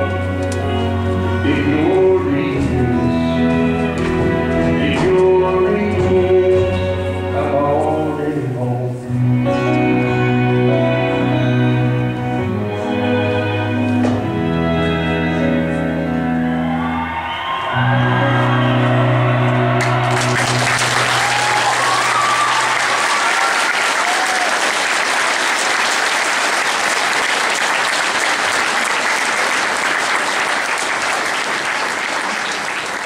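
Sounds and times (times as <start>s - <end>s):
music with long held chords: 0.0s - 23.0s
audience applause: 16.6s - 33.0s.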